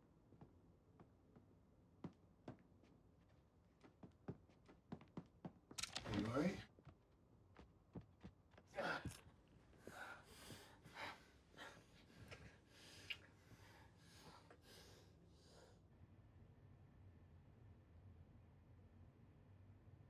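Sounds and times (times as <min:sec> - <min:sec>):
person breathing hard: 0:09.8 - 0:15.8.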